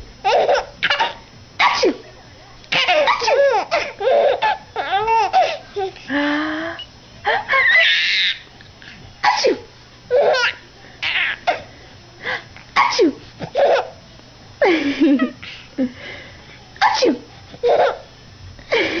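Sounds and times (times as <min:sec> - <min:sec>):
baby laughing: 0:00.2 - 0:01.2, 0:02.8 - 0:06.0, 0:07.3 - 0:08.4, 0:10.1 - 0:11.7, 0:13.5 - 0:14.0.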